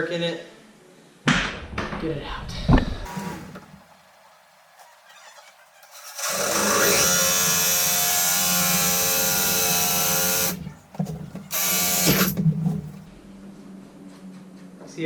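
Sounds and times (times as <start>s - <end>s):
power drill boring into wood: 3.1s - 3.7s, 5.8s - 10.7s, 11.4s - 12.4s.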